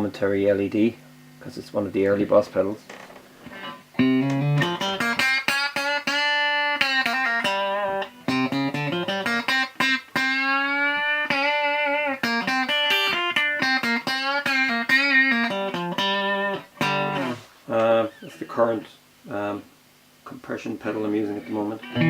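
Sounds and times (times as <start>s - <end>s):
clean electric guitar playing: 3.5s - 17.5s, 21.5s - 22.0s.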